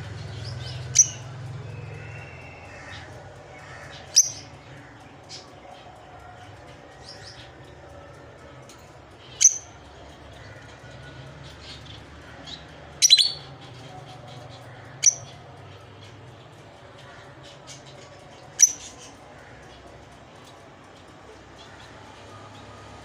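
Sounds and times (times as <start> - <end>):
lovebirds chirping: 0.0 - 5.6, 11.4 - 16.2, 17.4 - 19.2.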